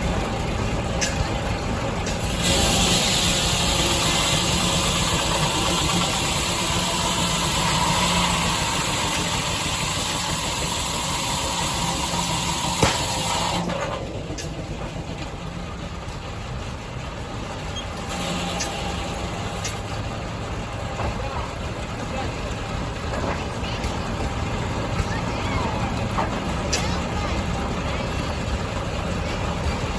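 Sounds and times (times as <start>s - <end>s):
steam engine running: 0.0s - 29.9s
steam hiss: 2.1s - 13.8s.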